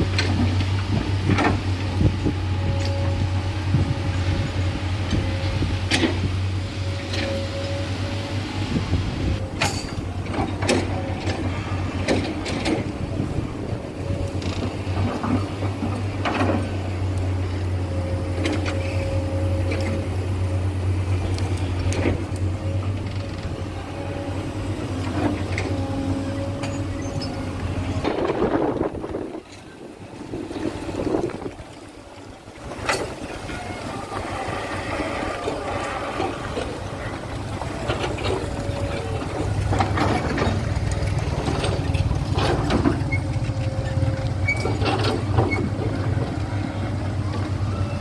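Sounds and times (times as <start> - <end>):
excavator engine drone: 0.0 - 48.0
knocks and clanks: 9.6 - 12.9, 37.6 - 46.4.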